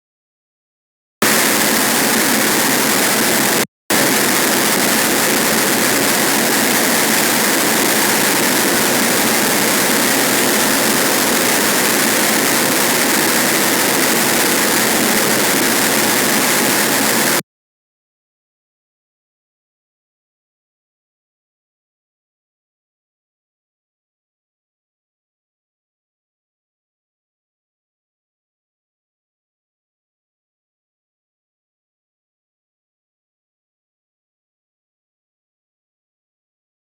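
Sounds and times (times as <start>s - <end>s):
distorted static noise wall: 1.2s - 17.4s.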